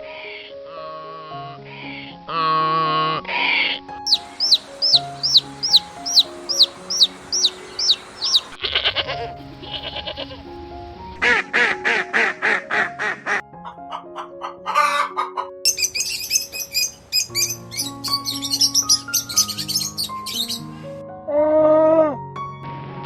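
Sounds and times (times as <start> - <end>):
background music with steady notes: 0.0 - 23.0
rapid pulsed animal calls: 4.1 - 8.7
high animal chirps: 4.1 - 9.0, 13.9 - 20.6.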